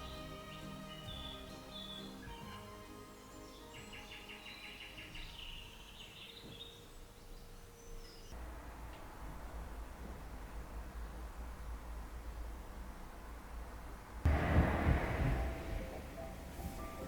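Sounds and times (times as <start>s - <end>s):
bird trilling and chirping: 0.0s - 8.3s
low steady rumble: 8.4s - 17.0s.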